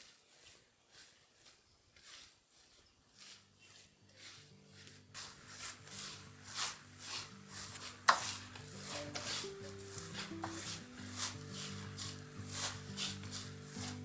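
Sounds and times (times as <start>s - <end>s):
rubbing swishing strokes: 0.0s - 14.0s
soft background music: 4.2s - 14.0s.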